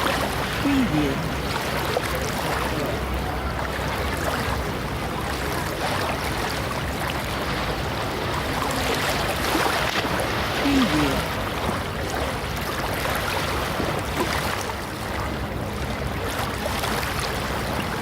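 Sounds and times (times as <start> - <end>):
chatter of beachgoers: 0.0 - 6.8, 10.5 - 12.5
surf washing: 0.0 - 18.0.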